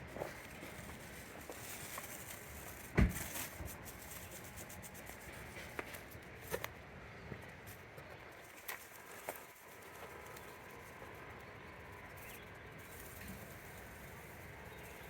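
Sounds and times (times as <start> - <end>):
dull thump: 2.9 - 3.5.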